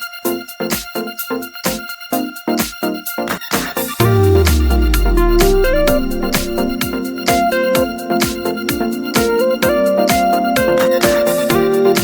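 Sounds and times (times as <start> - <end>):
electronic music with quick beat: 4.0 - 6.8.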